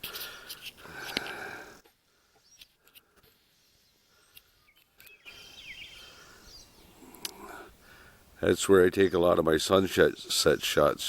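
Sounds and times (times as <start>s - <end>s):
clicks and rustles: 0.0s - 1.4s
faint outdoor ambience: 0.0s - 11.0s
high bird chirps: 3.6s - 6.9s.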